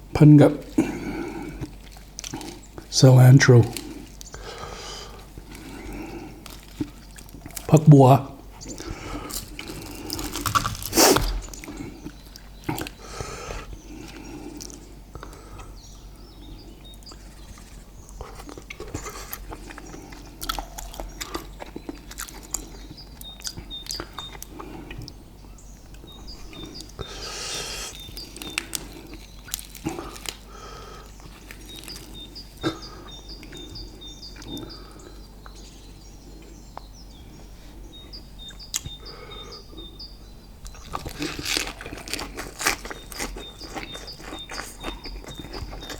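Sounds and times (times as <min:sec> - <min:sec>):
chewing and crunching food: 0:00.0 - 0:45.9
small birds chirping: 0:00.1 - 0:45.9
wet mouth clicks: 0:08.7 - 0:11.8
rustling: 0:08.9 - 0:11.9.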